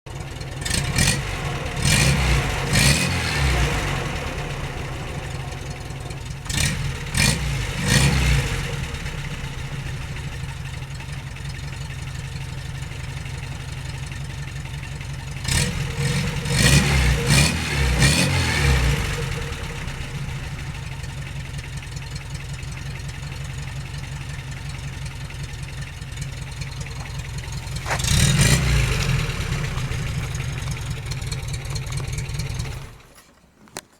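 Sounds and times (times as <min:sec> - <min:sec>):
car engine idling: 0:00.0 - 0:33.3
engine revving: 0:00.1 - 0:10.4, 0:15.4 - 0:21.0, 0:26.4 - 0:33.0.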